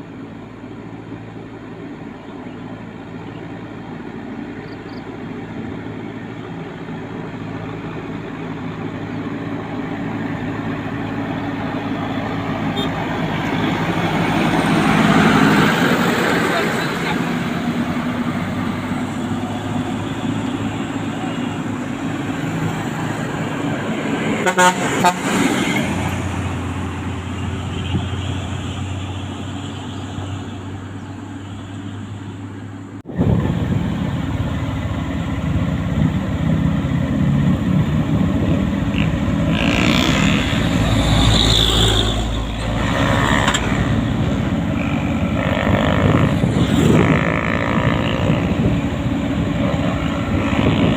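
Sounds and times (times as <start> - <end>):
truck engine running: 0.0 - 50.9
truck horn toots: 12.6 - 13.8, 24.4 - 25.8, 39.0 - 40.8.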